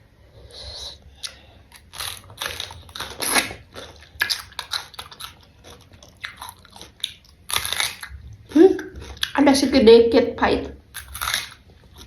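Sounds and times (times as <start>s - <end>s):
crisp chewing crunches: 1.2s - 9.4s, 10.9s - 12.0s.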